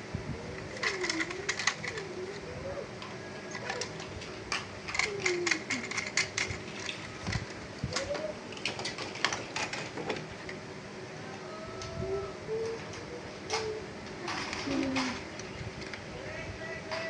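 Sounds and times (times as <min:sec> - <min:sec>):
doves cooing: 0:00.1 - 0:17.0
light plastic clicks and rattles: 0:00.8 - 0:02.1.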